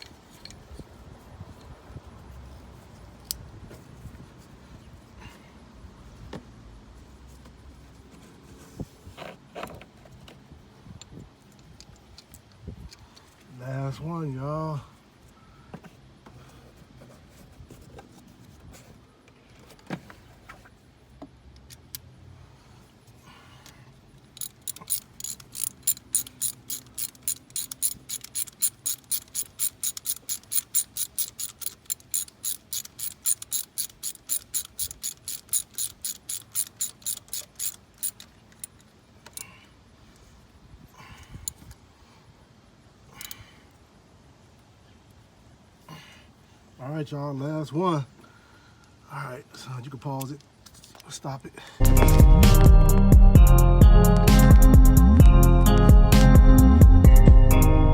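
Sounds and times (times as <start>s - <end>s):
ratchet wrench clicking: 24.3s - 39.5s.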